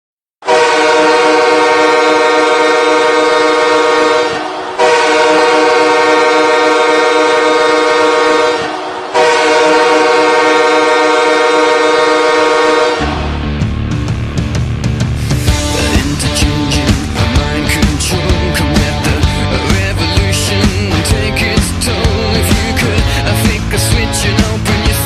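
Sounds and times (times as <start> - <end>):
hockey goal horn blasts: 0.4 - 13.3.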